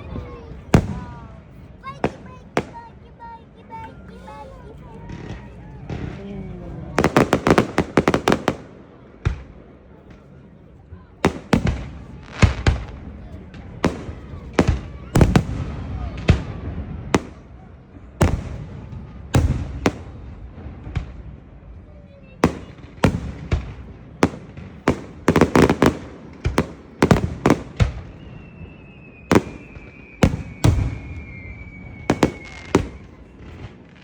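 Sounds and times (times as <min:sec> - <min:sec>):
fireworks banging: 0:00.0 - 0:10.5, 0:11.2 - 0:34.0
fireworks crackling: 0:00.0 - 0:34.0
falling whistle: 0:28.0 - 0:33.4.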